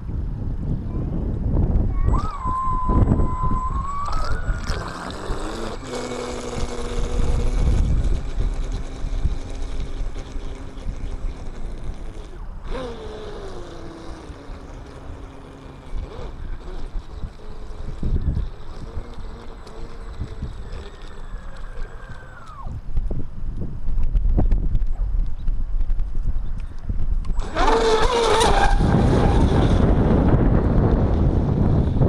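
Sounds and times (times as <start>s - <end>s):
wind rumble on microphone: 0.0s - 32.0s
model boat motor whining: 2.0s - 22.8s, 27.3s - 32.0s.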